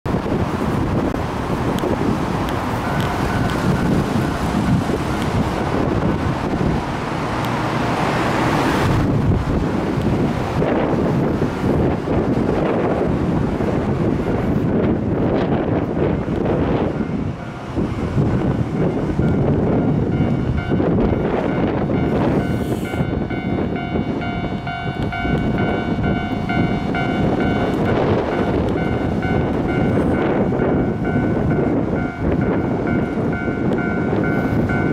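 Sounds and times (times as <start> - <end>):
wind buffeting microphone: 0.0 - 34.9
passing vehicles rumble and hiss: 0.1 - 34.9
level crossing warning bell: 2.8 - 4.8, 16.1 - 34.9.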